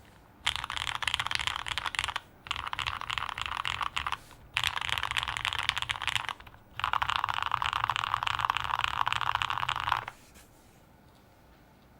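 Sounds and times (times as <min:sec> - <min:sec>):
fast typing on mechanical keyboard: 0:00.4 - 0:10.2.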